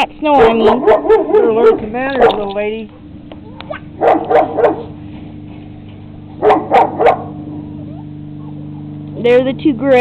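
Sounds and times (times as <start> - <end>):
steady low hum: 0.0 - 10.0
dog barking: 0.4 - 4.9, 6.4 - 8.9.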